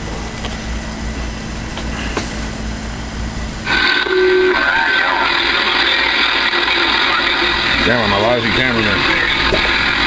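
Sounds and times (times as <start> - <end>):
electrical hum: 0.0 - 10.0
radio static hiss: 3.6 - 10.0.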